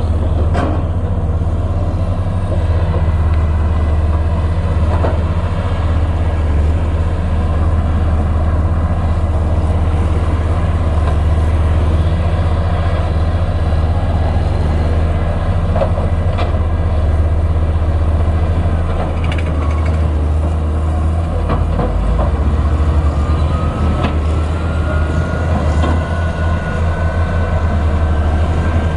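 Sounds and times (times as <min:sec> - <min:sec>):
excavator diesel engine rumbling: 0:00.0 - 0:28.9
rising whine: 0:22.4 - 0:28.9.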